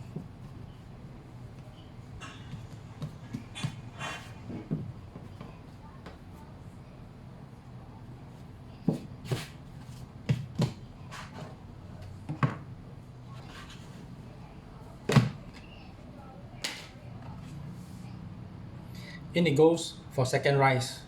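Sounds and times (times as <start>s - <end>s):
knocks and thuds of dough handling: 0.0s - 6.4s, 8.3s - 14.2s, 14.8s - 15.9s.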